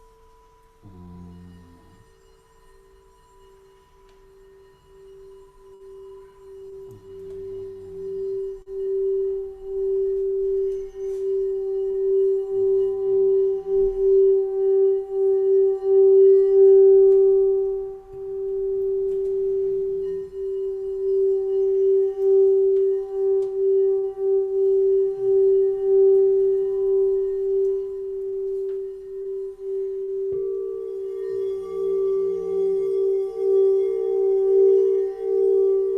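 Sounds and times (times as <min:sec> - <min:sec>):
singing bowl ringing tone: 0:00.0 - 0:35.9
faint low sounds: 0:00.8 - 0:02.2.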